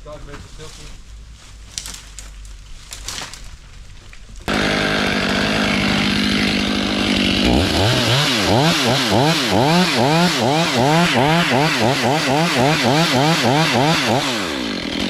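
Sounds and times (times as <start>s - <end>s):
two-stroke chainsaw revving: 4.5s - 15.0s.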